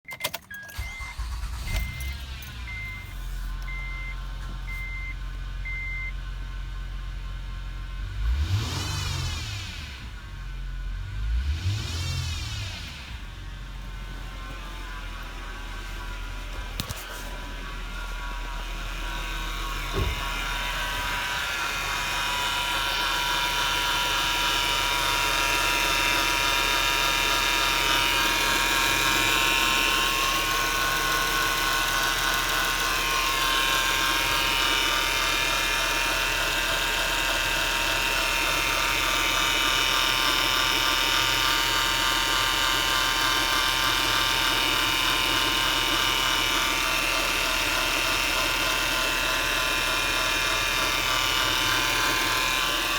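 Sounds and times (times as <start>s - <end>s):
short thump: 19.7s - 20.6s.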